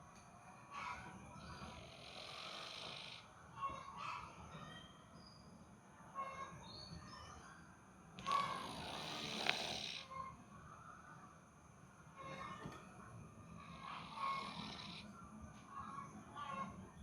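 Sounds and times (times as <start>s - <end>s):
cat snoring: 1.7s - 3.3s, 8.2s - 10.1s, 13.6s - 15.1s.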